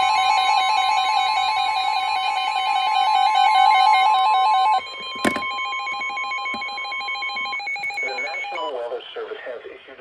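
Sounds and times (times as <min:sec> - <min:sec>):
steady alarm tone: 0:00.0 - 0:08.9.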